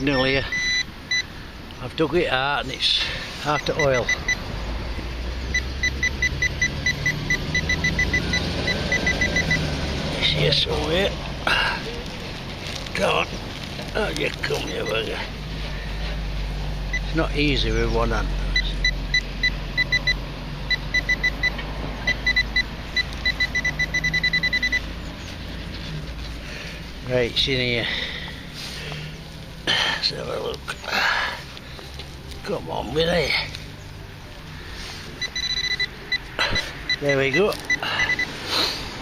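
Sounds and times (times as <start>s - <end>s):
metal detector beeping: 0.0s - 1.3s, 3.4s - 4.4s, 5.5s - 9.6s, 14.4s - 15.1s, 18.5s - 24.9s, 35.2s - 38.4s.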